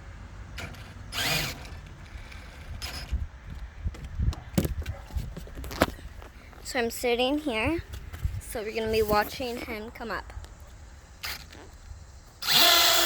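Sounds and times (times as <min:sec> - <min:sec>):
electric motor whining: 0:00.5 - 0:03.3, 0:11.2 - 0:13.0.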